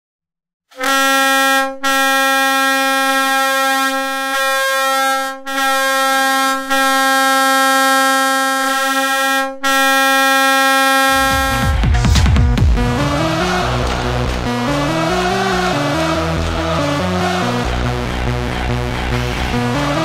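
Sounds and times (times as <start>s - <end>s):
train air horn blasts: 0.7s - 11.8s.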